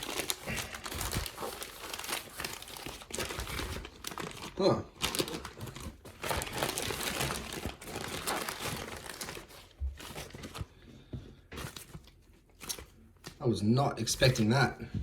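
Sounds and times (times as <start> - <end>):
packaging crinkling and rustling: 0.0 - 13.4.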